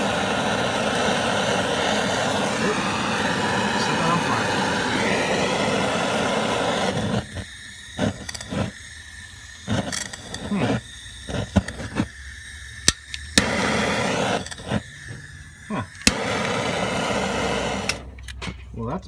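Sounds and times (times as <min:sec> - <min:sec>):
torch flame hissing: 0:00.0 - 0:18.2
gas spurts: 0:00.0 - 0:18.3
trigger igniter clicks: 0:12.8 - 0:14.8, 0:16.0 - 0:18.4.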